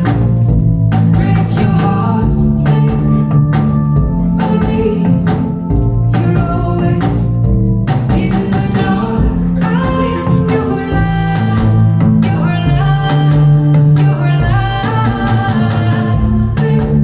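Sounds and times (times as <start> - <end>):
bass line: 0.0 - 17.0
steady beat: 0.0 - 17.0
person singing: 1.2 - 17.0.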